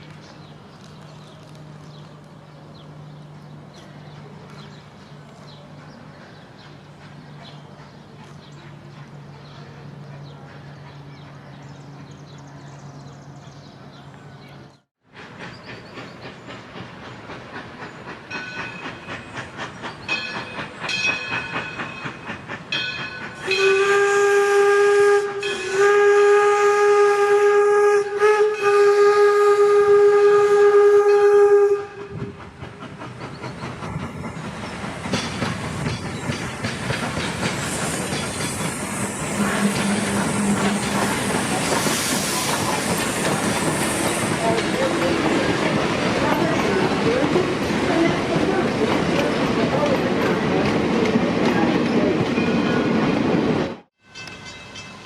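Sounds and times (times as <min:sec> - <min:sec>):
steam locomotive exhaust beats: 0:00.0 - 0:14.3, 0:15.0 - 0:55.0
train running clatter: 0:00.0 - 0:55.0
steam hiss: 0:15.1 - 0:26.1, 0:32.0 - 0:50.0
steam whistle blast: 0:23.4 - 0:32.3.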